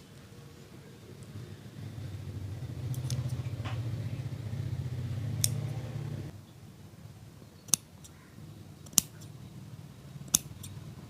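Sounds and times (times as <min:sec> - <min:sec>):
low background rumble: 0:00.0 - 0:07.4.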